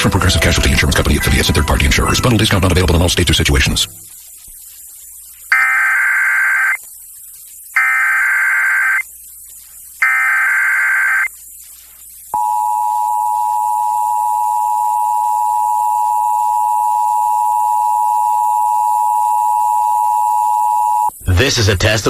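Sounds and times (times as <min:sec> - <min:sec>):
warbling digital data bursts: 0:00.7 - 0:12.2.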